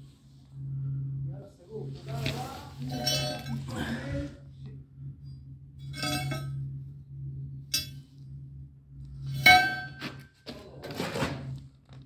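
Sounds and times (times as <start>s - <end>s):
steady low hum: 0.0s - 12.0s
scraping noises: 1.8s - 4.4s
metal strikes ringing: 2.8s - 3.9s, 5.8s - 6.6s, 7.7s - 8.1s, 9.3s - 10.3s.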